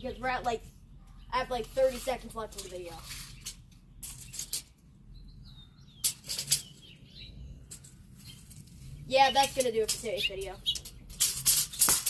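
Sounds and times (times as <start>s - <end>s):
faint bird chirps: 5.0s - 11.0s.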